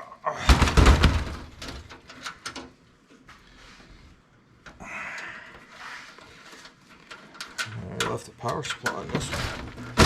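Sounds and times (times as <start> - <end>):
computer case parts clicking: 0.8 - 2.8, 6.5 - 10.0.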